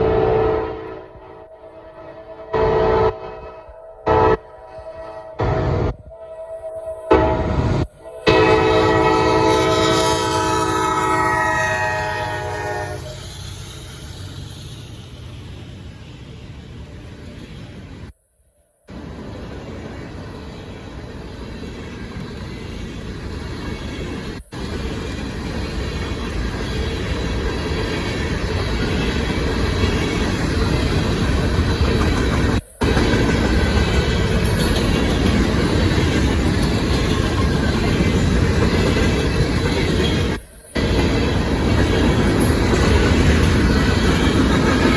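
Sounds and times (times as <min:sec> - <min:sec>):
locomotive air horn chord: 0:00.0 - 0:13.2
train rumbling by: 0:00.0 - 0:44.9.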